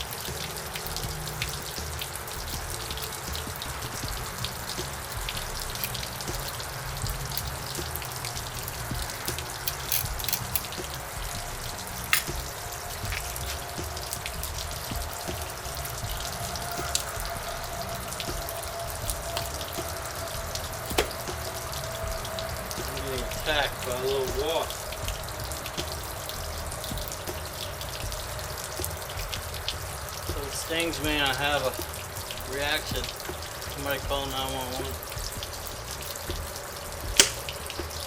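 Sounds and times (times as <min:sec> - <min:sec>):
steady hiss: 0:00.0 - 0:38.0
hand tools clicking and tapping: 0:09.3 - 0:11.0, 0:12.1 - 0:14.2, 0:20.9 - 0:21.3.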